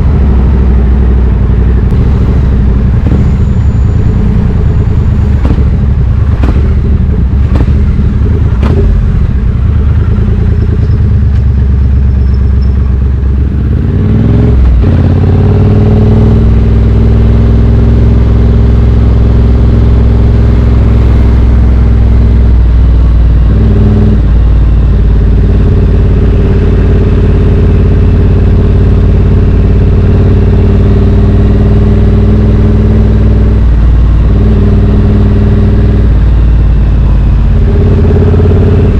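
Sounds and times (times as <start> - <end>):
motorcycle engine rumble: 0.0 - 38.9.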